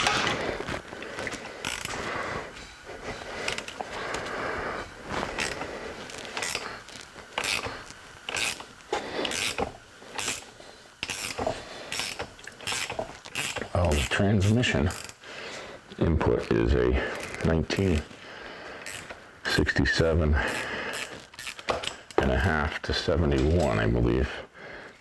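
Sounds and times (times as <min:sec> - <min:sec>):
metal scraping and clinking: 0:00.0 - 0:02.8.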